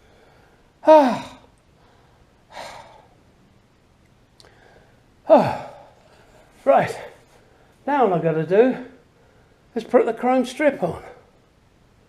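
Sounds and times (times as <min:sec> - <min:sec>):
soft breath: 0:00.0 - 0:00.8, 0:01.7 - 0:03.2, 0:04.4 - 0:07.8, 0:08.9 - 0:09.7
man sighing: 0:00.8 - 0:01.5, 0:02.5 - 0:03.1, 0:04.4 - 0:06.2.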